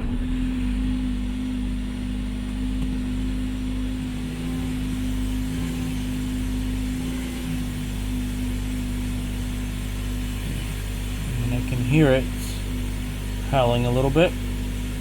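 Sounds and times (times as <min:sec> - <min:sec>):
car engine running: 0:00.0 - 0:15.0
humming whine: 0:00.0 - 0:15.0.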